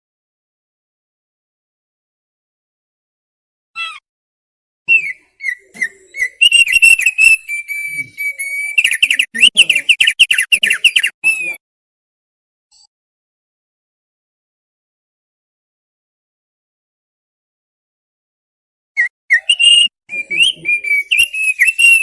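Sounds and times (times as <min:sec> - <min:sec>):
loud whistled birdsong: 0:04.9 - 0:11.6, 0:19.3 - 0:22.0.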